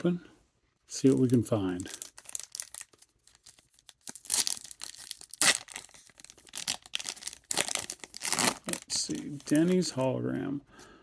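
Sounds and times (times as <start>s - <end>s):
wrapper tearing and crinkling: 1.2s - 9.8s.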